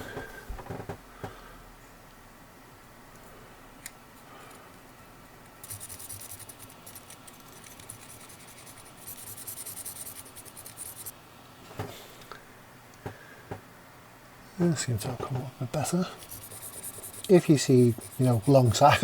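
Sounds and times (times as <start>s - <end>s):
pen scrubbing metal pins: 5.6s - 11.1s, 16.2s - 19.0s.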